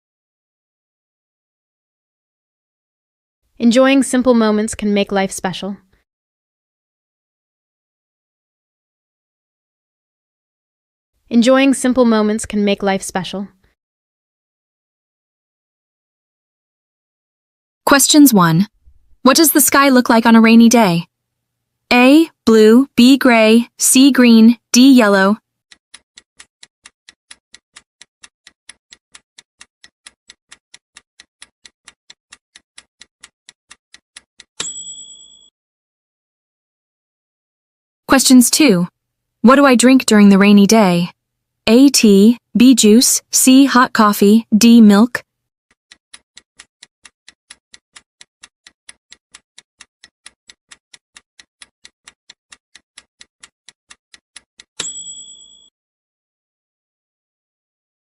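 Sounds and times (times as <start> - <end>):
clock ticking fast: 22.5 - 35.1, 41.8 - 55.3
bright bell ding: 34.6 - 35.5, 54.8 - 55.7.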